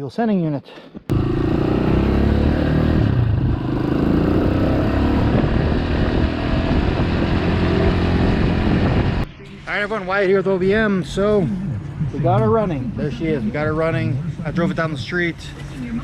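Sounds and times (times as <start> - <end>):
dirt bike engine running: 1.1 - 9.2.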